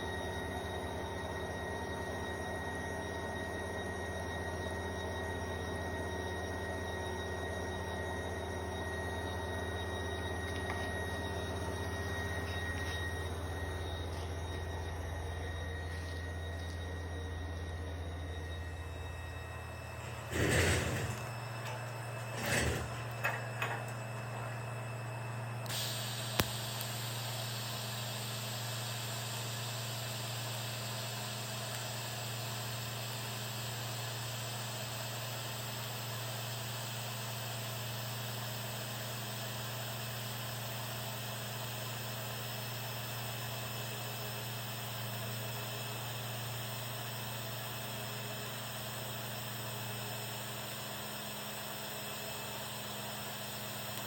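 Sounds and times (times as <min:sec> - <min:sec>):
welding arc hissing and buzzing: 0:25.7 - 0:31.9.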